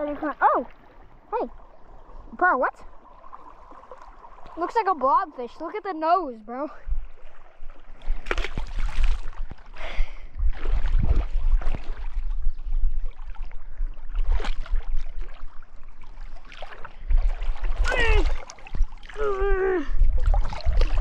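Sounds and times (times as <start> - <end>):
water splashing around wading person: 6.8 - 21.0.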